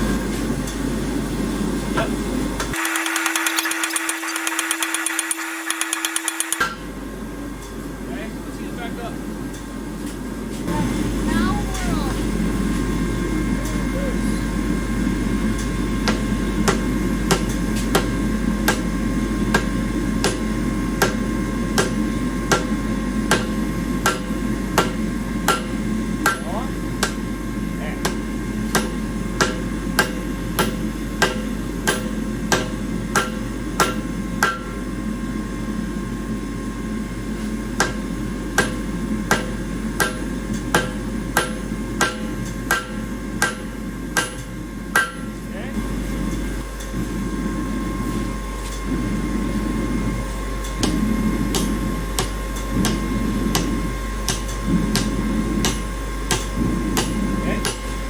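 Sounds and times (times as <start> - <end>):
hammer striking steel bar: 2.8 - 6.8, 16.0 - 18.1, 19.5 - 21.2, 21.8 - 22.7, 23.3 - 27.2, 28.0 - 34.8, 38.6 - 45.4, 50.8 - 57.9.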